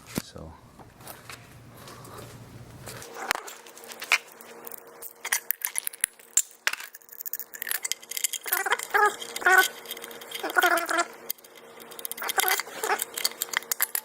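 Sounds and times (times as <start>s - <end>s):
metal clinking and rattling: 1.0s - 14.0s
short squeaks: 7.5s - 14.0s.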